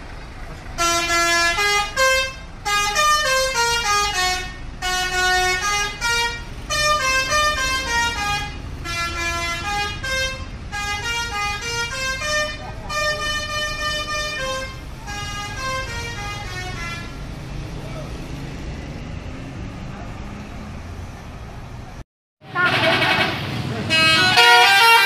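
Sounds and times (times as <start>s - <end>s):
multi-note musical bus horn: 0.8s - 17.2s, 22.4s - 25.0s.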